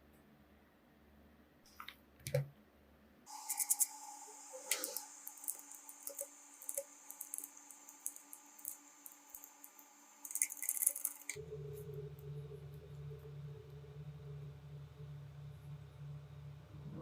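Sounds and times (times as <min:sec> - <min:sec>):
steady hiss: 0:03.3 - 0:16.8.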